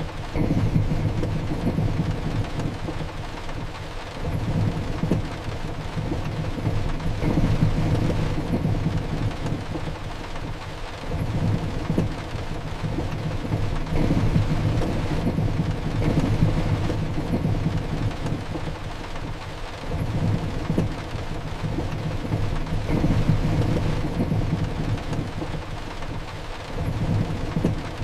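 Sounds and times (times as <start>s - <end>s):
heavy rain: 0.0s - 28.0s
low rolling thunder: 0.3s - 3.0s, 4.2s - 10.0s, 11.1s - 18.8s, 19.9s - 25.8s.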